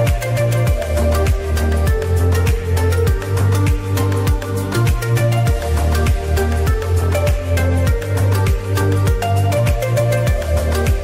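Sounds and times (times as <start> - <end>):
bass line: 0.0 - 11.0
kick drum: 0.1 - 11.0.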